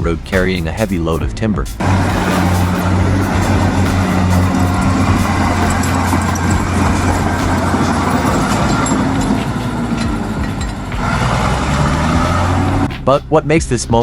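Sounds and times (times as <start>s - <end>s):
heavy diesel truck engine labouring: 1.8s - 12.9s.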